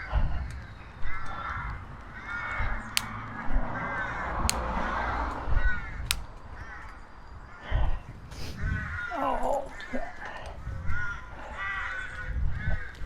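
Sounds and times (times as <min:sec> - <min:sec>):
crows cawing: 0:00.0 - 0:13.0
sharp clicks: 0:00.4 - 0:05.4, 0:06.0 - 0:07.0.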